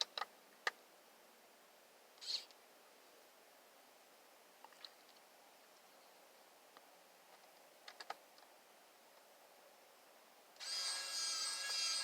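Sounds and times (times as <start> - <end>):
electric screwdriver motor whining: 10.6 - 12.0.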